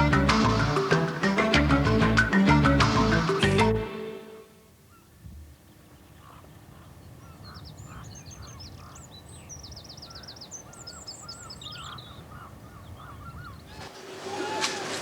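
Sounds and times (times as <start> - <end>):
repeated lower bird calls: 0.0 - 15.0
birds chirping and trilling: 4.9 - 15.0.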